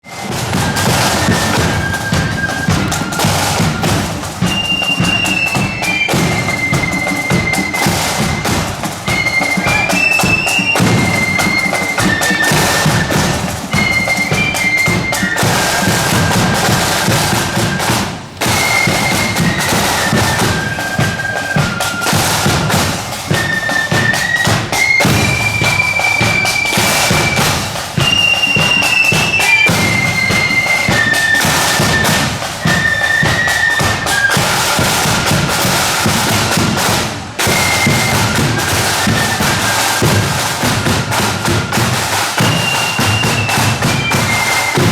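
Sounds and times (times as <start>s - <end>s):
flute melody: 0.0s - 44.9s
marching drums with bass drum: 0.0s - 44.9s.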